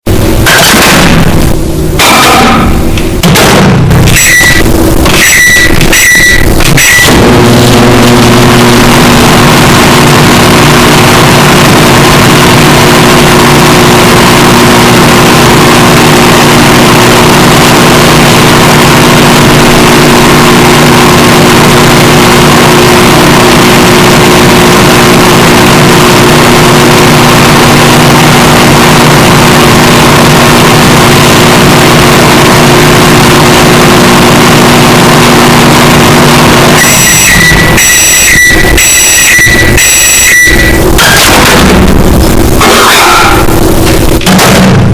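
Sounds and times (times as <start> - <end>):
microwave electrical hum: 0.1 - 44.9
microwave fan whirring: 6.5 - 37.0.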